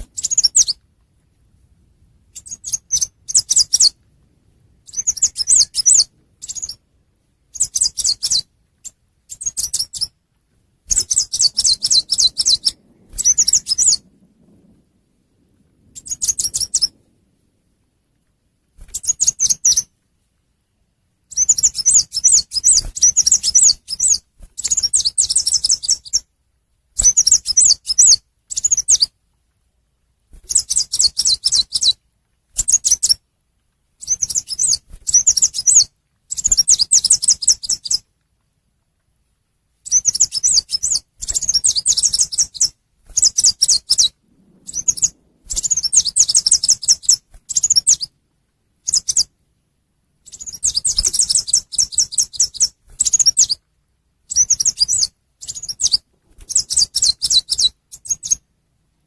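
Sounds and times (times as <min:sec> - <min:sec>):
songbird twittering chirps: 0:00.0 - 0:00.8, 0:02.3 - 0:04.0, 0:04.8 - 0:10.2, 0:10.8 - 0:17.3, 0:18.9 - 0:19.9, 0:21.3 - 0:26.3, 0:27.0 - 0:29.2, 0:30.4 - 0:32.0, 0:32.6 - 0:33.2, 0:34.0 - 0:38.1, 0:39.8 - 0:48.2, 0:48.8 - 0:49.4, 0:50.2 - 0:53.6, 0:54.3 - 0:58.5.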